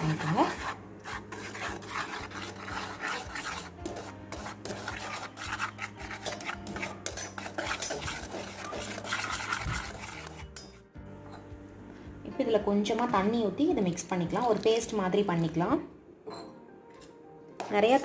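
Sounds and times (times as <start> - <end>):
powder stirred scraping bowl: 0.0 - 10.8, 14.2 - 15.0.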